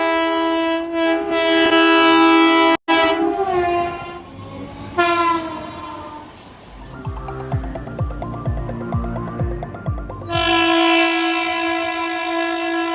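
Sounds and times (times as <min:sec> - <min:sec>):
train horn blasts: 0:00.0 - 0:06.6, 0:10.3 - 0:12.9.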